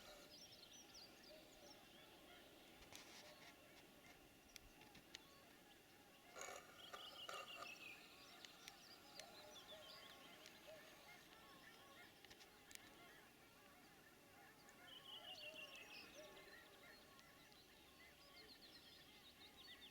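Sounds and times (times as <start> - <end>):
many birds calling: 0.0 - 19.9.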